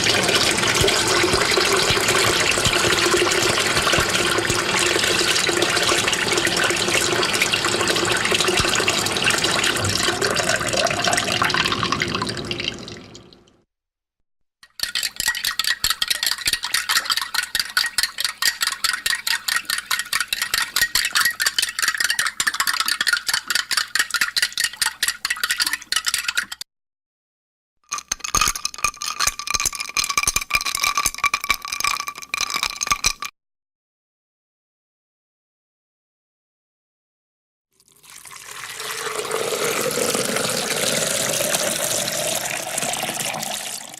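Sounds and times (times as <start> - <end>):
spoon clinking in a glass: 14.6 - 26.6, 27.9 - 33.3.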